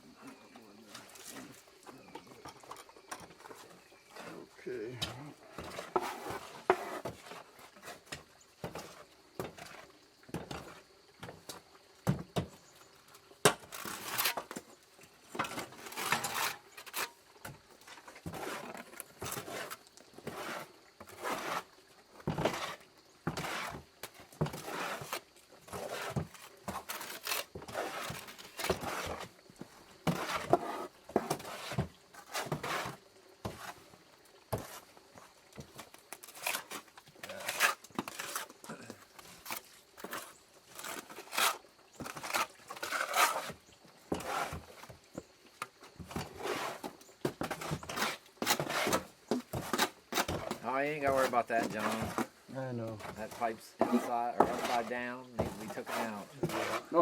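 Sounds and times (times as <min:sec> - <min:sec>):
trowel scraping wet mortar: 0:04.1 - 0:09.8, 0:13.4 - 0:14.6, 0:15.3 - 0:29.3, 0:30.0 - 0:33.8, 0:36.2 - 0:44.9, 0:46.1 - 0:57.0.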